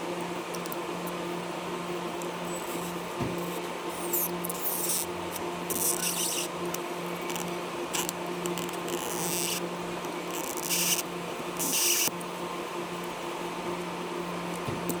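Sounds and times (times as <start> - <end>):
tool scraping a phone: 5.8 - 6.5.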